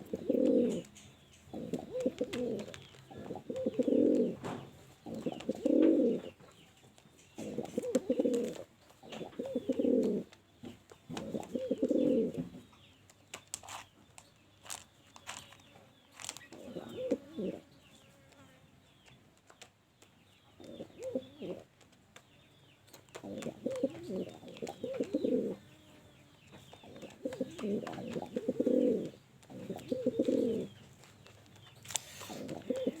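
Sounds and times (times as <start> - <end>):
pigeon cooing: 0.0 - 6.4, 7.4 - 10.4, 11.1 - 12.6, 16.5 - 17.7, 20.6 - 21.7, 23.2 - 25.6, 26.9 - 30.8, 32.1 - 33.0.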